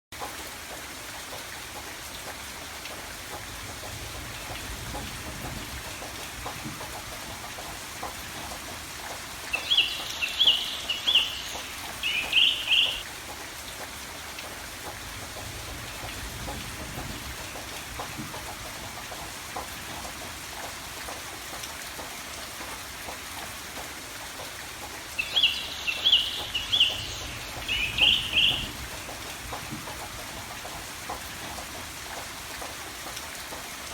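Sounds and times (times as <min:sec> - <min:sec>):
steady rain falling: 0:00.1 - 0:33.9.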